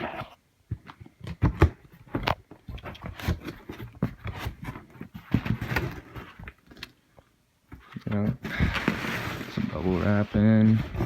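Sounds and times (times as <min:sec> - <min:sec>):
cardboard and plastic wrap crinkling: 0:07.8 - 0:11.0.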